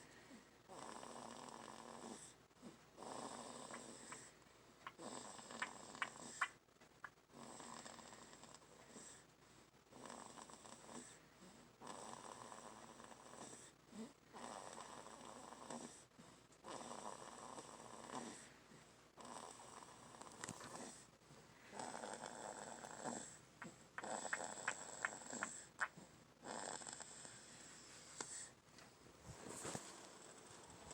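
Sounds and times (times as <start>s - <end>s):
person snoring: 3.0s - 4.3s, 4.9s - 6.5s, 21.7s - 23.4s, 24.0s - 28.5s.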